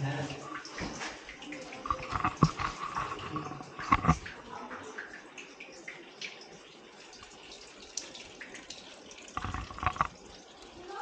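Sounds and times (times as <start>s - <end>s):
stream water trickling over rocks: 0.0s - 11.0s
small knocks: 1.9s - 4.4s, 9.3s - 10.2s.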